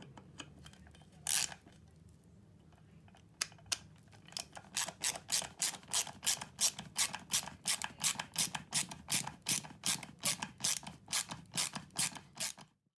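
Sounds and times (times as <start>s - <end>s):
ratchet screwdriver clicking: 1.3s - 1.6s, 4.4s - 12.6s.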